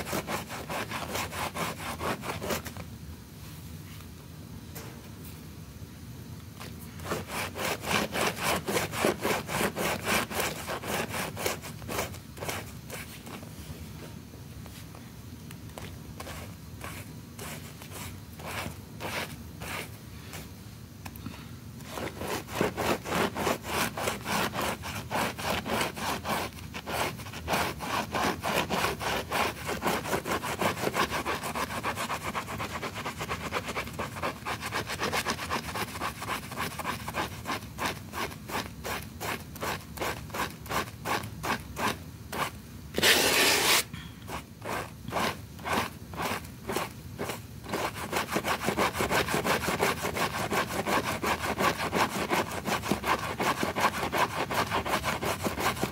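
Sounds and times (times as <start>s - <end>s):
stiff brush scrubbing wet rug: 0.0s - 2.6s, 7.0s - 13.2s, 21.8s - 55.9s.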